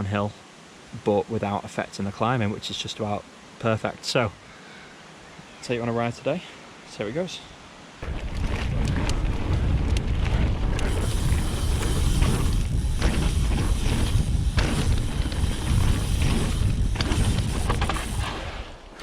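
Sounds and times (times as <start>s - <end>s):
bike knocks and rattles: 8.0s - 18.4s
bike tyres on dirt: 8.0s - 19.0s
wind on microphone: 8.0s - 19.0s.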